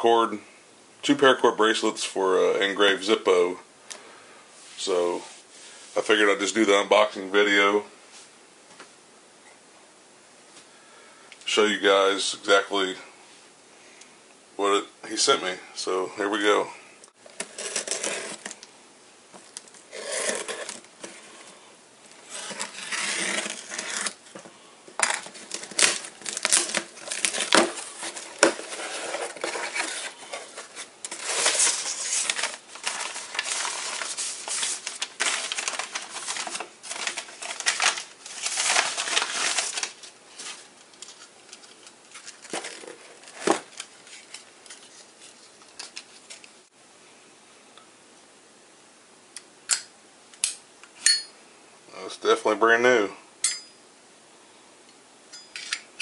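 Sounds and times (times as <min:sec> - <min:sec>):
packaging rustling and crinkling: 0:17.2 - 0:18.6, 0:19.4 - 0:46.6
packaging tearing: 0:17.4 - 0:18.6, 0:19.9 - 0:20.9, 0:22.2 - 0:24.2, 0:25.0 - 0:45.0.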